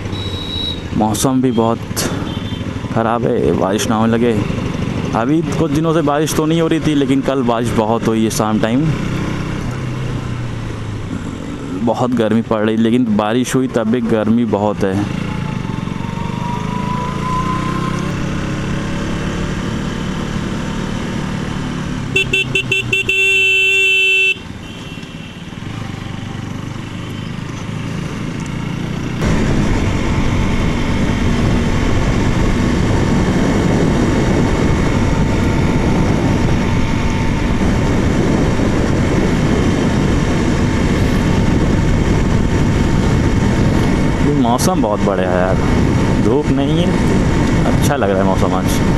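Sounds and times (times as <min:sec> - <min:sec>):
motorcycle engine riding: 0:00.0 - 0:48.9
vehicle horn tooting: 0:00.1 - 0:00.9, 0:01.5 - 0:02.7, 0:22.1 - 0:26.0
wind noise: 0:29.2 - 0:48.9.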